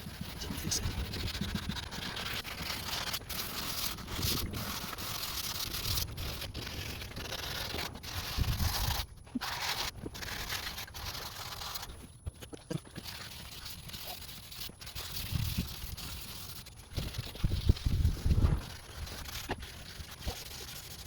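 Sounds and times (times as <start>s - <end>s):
sandpaper scraping plastic: 0.0s - 21.0s.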